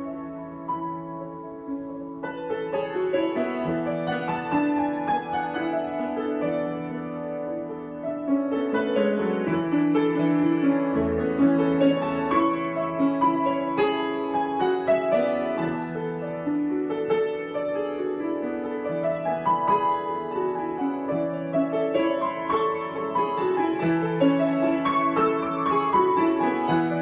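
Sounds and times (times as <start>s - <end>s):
solo piano improvisation: 0.0s - 27.0s.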